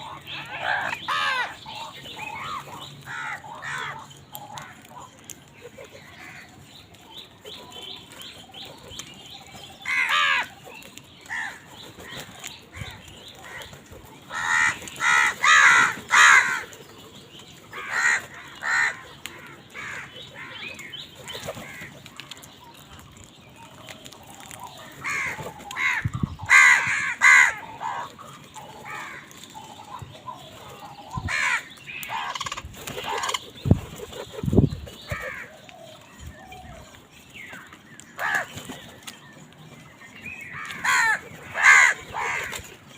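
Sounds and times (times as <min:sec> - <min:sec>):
crows cawing: 0:00.0 - 0:05.2, 0:06.0 - 0:06.6, 0:09.8 - 0:10.6, 0:11.3 - 0:11.7, 0:14.3 - 0:16.7, 0:17.7 - 0:20.7, 0:21.3 - 0:22.0, 0:24.8 - 0:30.0, 0:31.3 - 0:33.4, 0:35.1 - 0:35.6, 0:38.2 - 0:38.5, 0:40.5 - 0:42.7.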